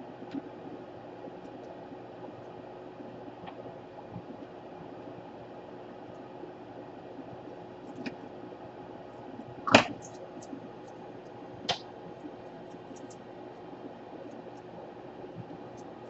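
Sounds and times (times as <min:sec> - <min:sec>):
steady background hum: 0:00.0 - 0:16.0
sharp clicks and snaps: 0:09.7 - 0:11.9.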